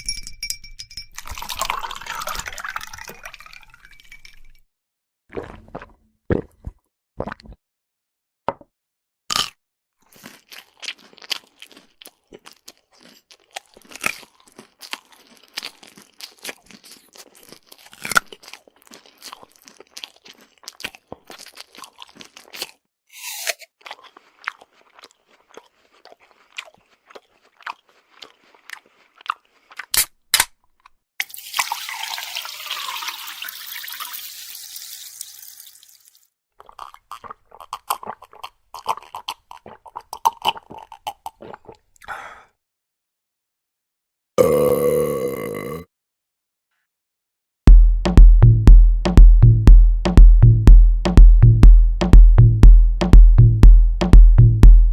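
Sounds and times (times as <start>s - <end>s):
crunchy chewing: 10.1s - 30.1s, 36.6s - 41.8s.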